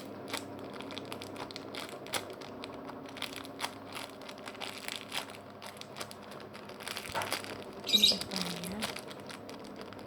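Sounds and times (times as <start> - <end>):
faint steady hum: 0.0 - 10.0
squishy toy crackling: 0.0 - 10.0.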